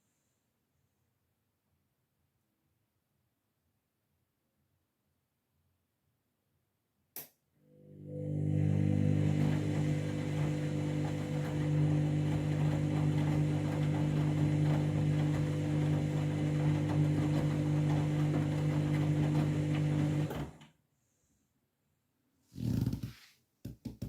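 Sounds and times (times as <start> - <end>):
washing machine motor hum: 7.6 - 20.6.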